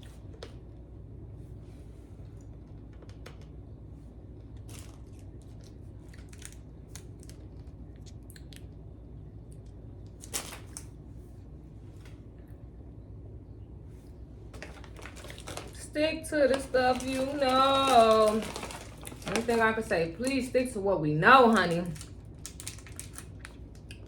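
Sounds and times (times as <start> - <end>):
plastic wrapper crinkling: 4.6 - 7.6, 14.6 - 24.0
wrapper snapping: 4.6 - 7.6, 10.1 - 10.9, 14.6 - 20.5, 21.5 - 24.0.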